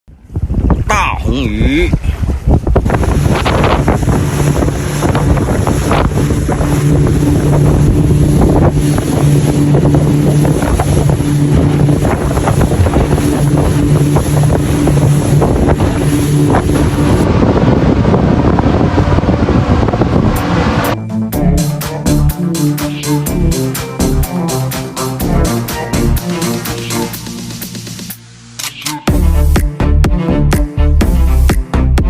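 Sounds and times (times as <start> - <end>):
wind buffeting microphone: 0.1 - 21.0
boat engine humming: 2.7 - 29.6.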